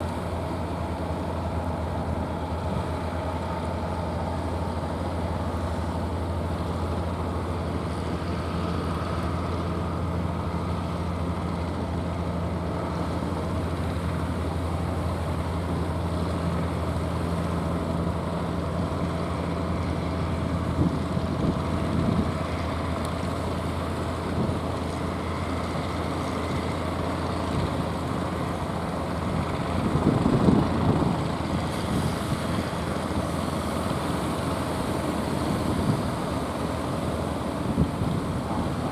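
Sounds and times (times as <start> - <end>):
boat engine droning: 0.0 - 38.9
wind gusts on microphone: 28.7 - 38.9.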